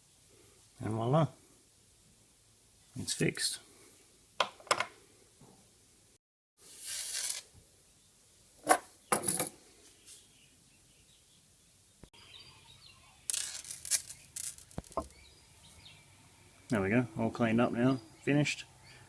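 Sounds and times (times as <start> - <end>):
chain rustling: 13.3 - 15.1
necklace chain jingling: 13.3 - 15.1.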